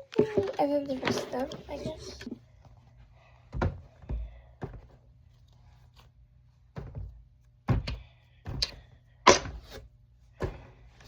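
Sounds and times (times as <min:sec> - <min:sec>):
soft thuds and knocks: 0:03.5 - 0:05.0, 0:06.7 - 0:08.8.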